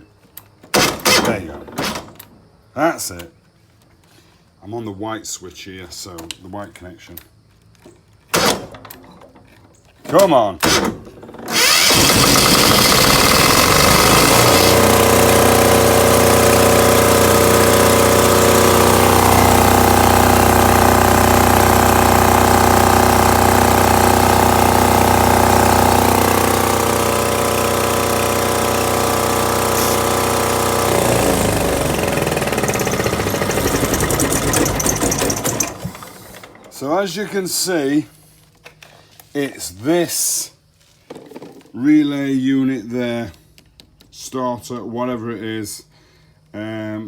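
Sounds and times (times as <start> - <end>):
fast rattling: 10.6 - 21.8, 23.8 - 36.9
diesel generator engine running: 11.2 - 37.4.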